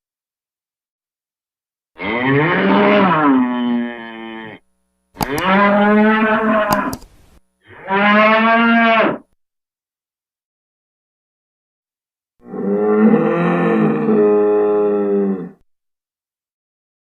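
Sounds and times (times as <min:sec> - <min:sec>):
bull mooing: 0:02.0 - 0:04.6, 0:05.2 - 0:06.9, 0:07.7 - 0:09.2, 0:12.4 - 0:15.6
sharp clicks: 0:05.1 - 0:05.6, 0:06.6 - 0:07.4.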